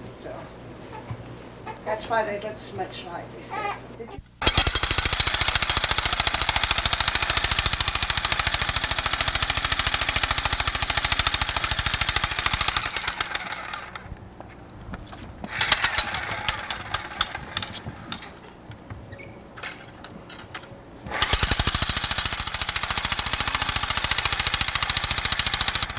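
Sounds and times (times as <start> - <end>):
jackhammer hammering: 4.4 - 14.2, 15.4 - 18.3, 19.6 - 25.9.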